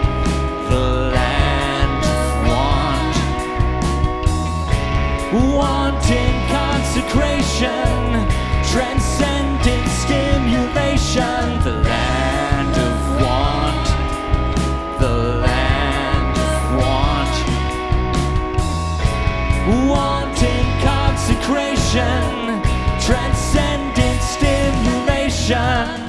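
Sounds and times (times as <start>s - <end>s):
person singing: 0.0s - 18.6s, 19.6s - 26.0s
rock band playing live: 0.0s - 26.0s.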